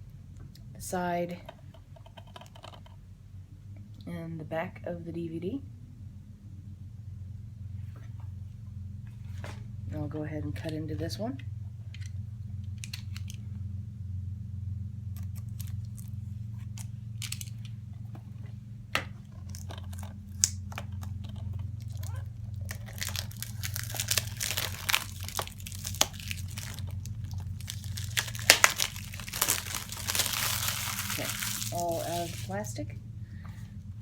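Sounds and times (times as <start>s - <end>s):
low steady hum: 0.0s - 34.0s
small clicks and scrapes: 1.4s - 3.0s, 19.2s - 24.0s
plastic wrap crinkling and tearing: 15.2s - 16.2s, 21.8s - 32.6s.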